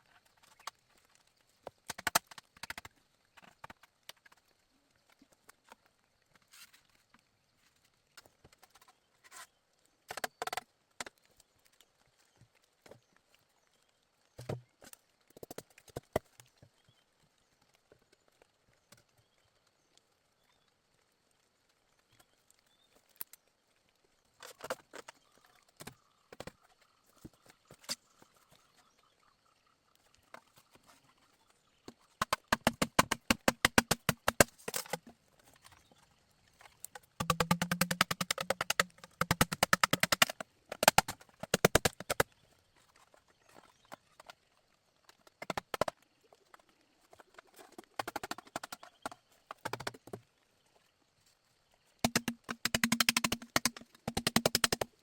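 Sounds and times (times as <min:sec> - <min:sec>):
hollow wooden knocks on bamboo: 0:14.4 - 0:16.2, 0:32.2 - 0:35.0, 0:36.9 - 0:42.3, 0:45.4 - 0:46.0, 0:48.0 - 0:50.2, 0:52.0 - 0:54.9.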